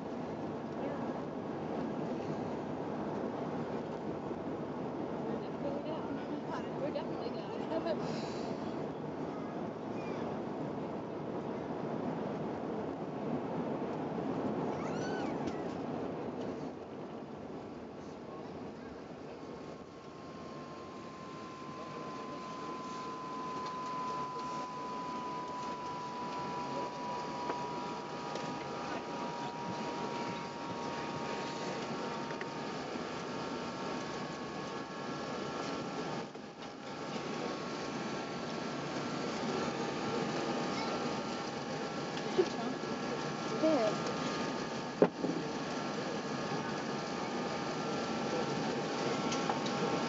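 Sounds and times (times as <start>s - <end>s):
aircraft cabin rushing hum: 10.7s - 50.0s
thin high whine: 19.6s - 50.0s.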